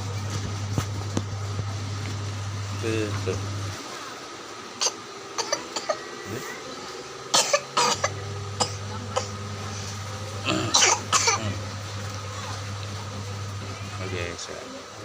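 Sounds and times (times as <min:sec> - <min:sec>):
child coughing: 0:04.8 - 0:06.1, 0:07.3 - 0:09.4, 0:10.4 - 0:11.6.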